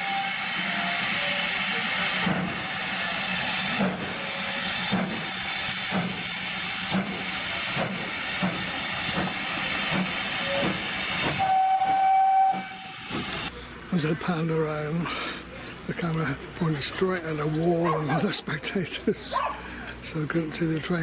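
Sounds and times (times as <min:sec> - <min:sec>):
steam whistle: 0:00.0 - 0:02.1, 0:10.4 - 0:13.0
steam locomotive chuffing: 0:00.0 - 0:13.6.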